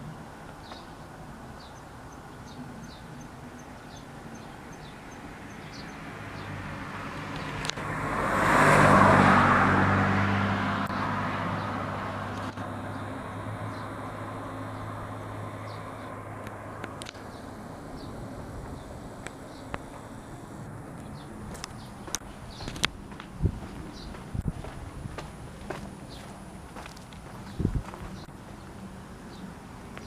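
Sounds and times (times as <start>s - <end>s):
low engine hum: 0.0s - 30.0s
car passing by: 4.3s - 22.9s.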